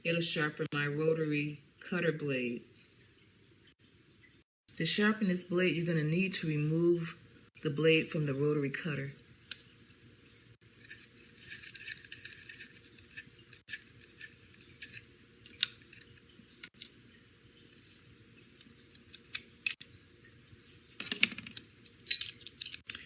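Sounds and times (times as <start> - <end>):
small clicks and scrapes: 10.6 - 20.0, 20.6 - 23.0
metal parts clattering: 21.0 - 23.0.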